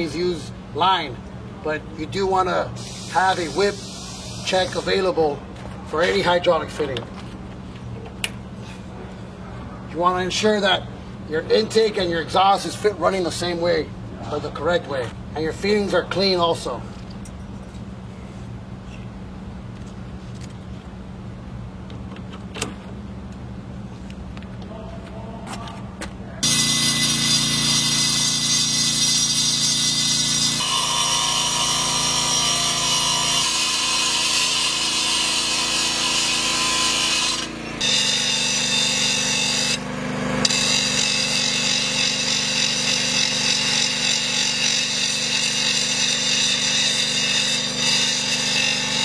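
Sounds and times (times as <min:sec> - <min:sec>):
grinder whining: 0:26.4 - 0:49.0.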